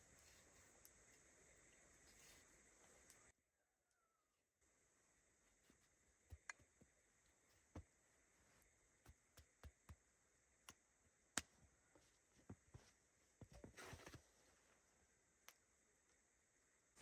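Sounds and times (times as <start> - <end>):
faint steady hiss: 0.0 - 17.0.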